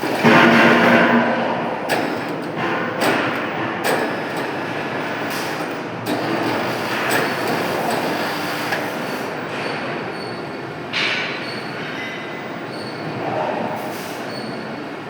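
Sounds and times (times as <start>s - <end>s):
metalworking machinery scraping: 0.0s - 9.9s
sharp metal knocks: 0.1s - 5.5s.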